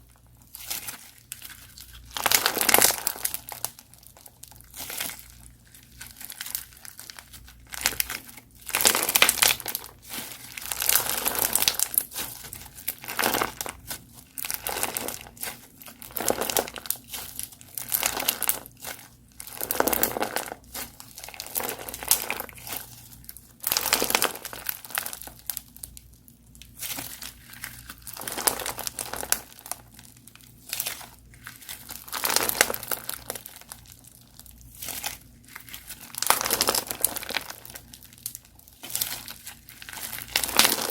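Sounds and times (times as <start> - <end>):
crunchy slime crackling and popping: 0.0 - 40.9.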